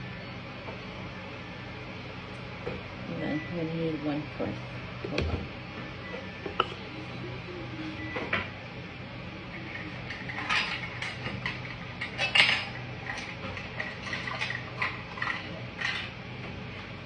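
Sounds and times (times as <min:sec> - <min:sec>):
kitchen utensils and dishes clattering: 0:09.7 - 0:16.2.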